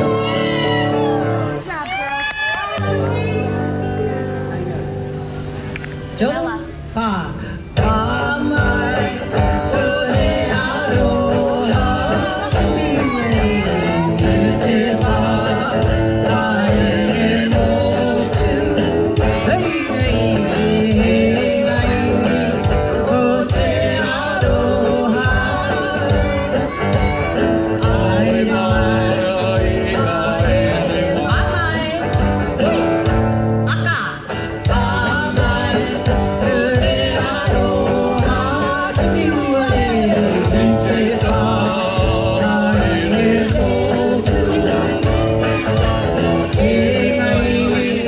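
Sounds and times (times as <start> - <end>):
song with singing over a beat: 0.0 - 1.8, 2.4 - 48.0.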